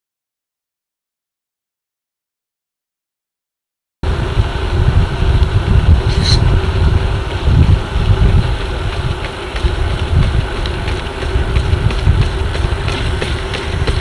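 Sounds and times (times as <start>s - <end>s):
wind rumble on microphone: 4.0s - 14.0s.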